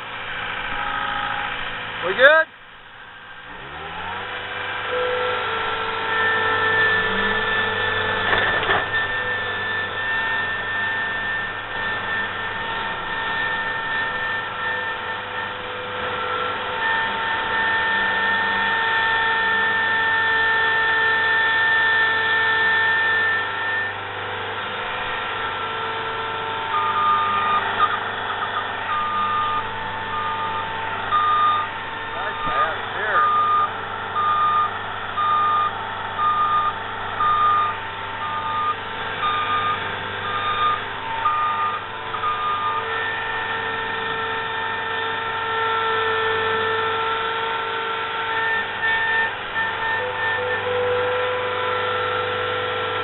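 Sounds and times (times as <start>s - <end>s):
skid steer engine drone: 0.0s - 53.0s
reversing alarm beeps: 6.1s - 18.4s, 21.2s - 24.0s, 26.6s - 43.9s, 48.4s - 50.7s.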